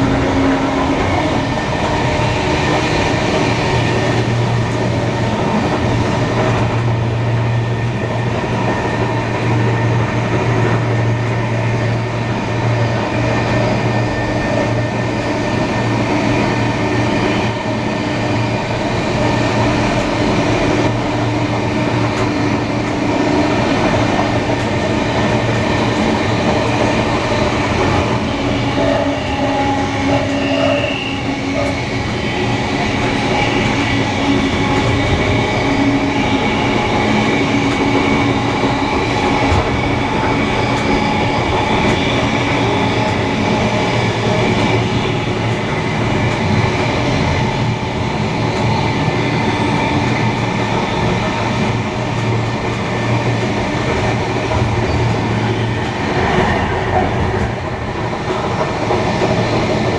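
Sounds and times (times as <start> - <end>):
train wheels rumbling on rail: 0.0 - 59.9.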